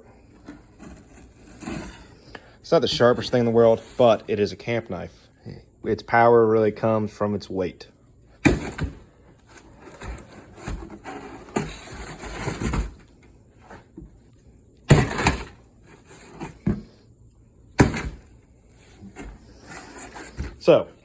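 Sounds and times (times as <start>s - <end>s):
scraping and rustling handling: 0.1s - 4.8s, 8.5s - 14.3s, 14.9s - 17.0s, 17.8s - 21.0s
knife chopping into wood: 8.4s - 9.0s, 17.8s - 18.3s.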